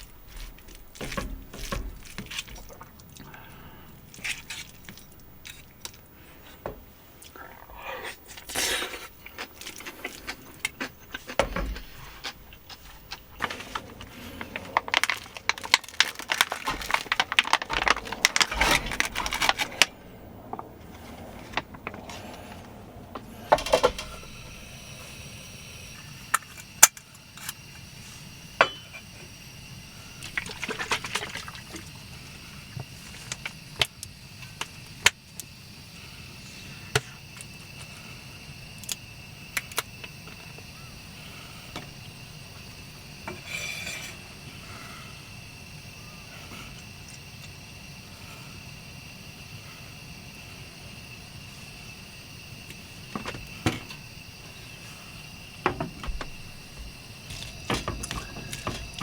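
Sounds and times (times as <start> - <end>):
tableware clinking and tapping: 28.6 - 29.0.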